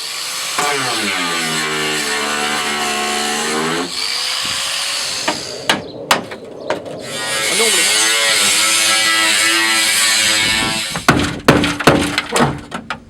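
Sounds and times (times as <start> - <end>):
power tool whining: 0.0 - 5.9, 6.9 - 11.1.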